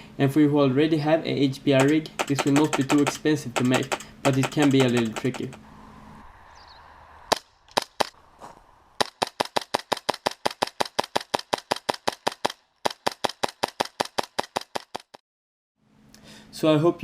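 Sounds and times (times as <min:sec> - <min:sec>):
airsoft pistol shots: 0:01.8 - 0:05.6, 0:09.0 - 0:14.9.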